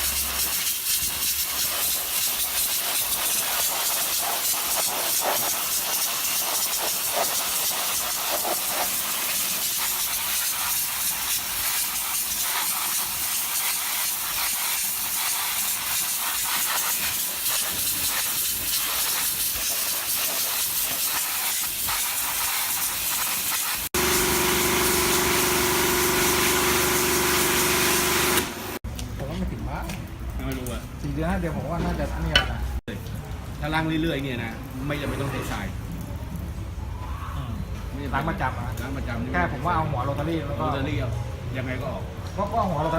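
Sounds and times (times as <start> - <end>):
pressure washer spray hissing: 0.0 - 28.8
machine hum: 24.0 - 28.8.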